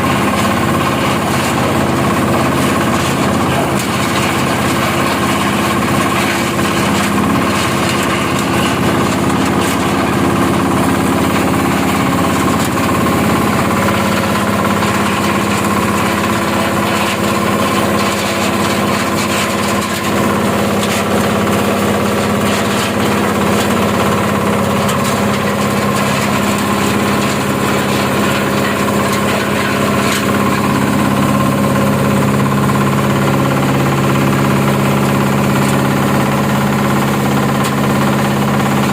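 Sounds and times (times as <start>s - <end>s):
peeling machine humming: 0.0s - 38.9s.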